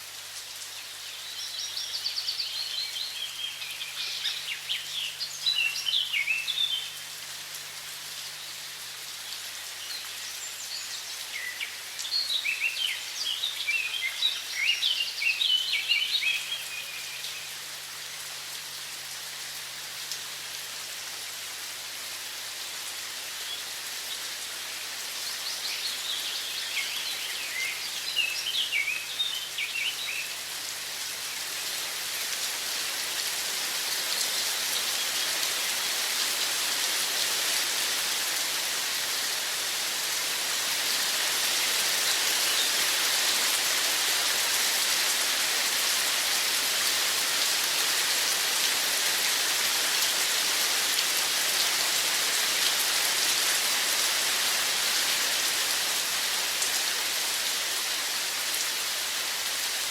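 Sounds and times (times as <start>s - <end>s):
running water hiss: 0.0s - 59.9s
songbirds chirping: 0.4s - 20.2s, 22.9s - 32.7s.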